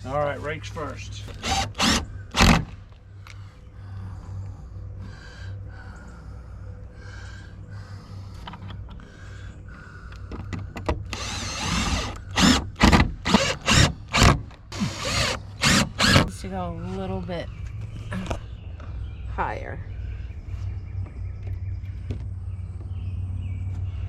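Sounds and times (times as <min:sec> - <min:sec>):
power drill driving screws: 0:01.3 - 0:02.7, 0:11.1 - 0:16.3.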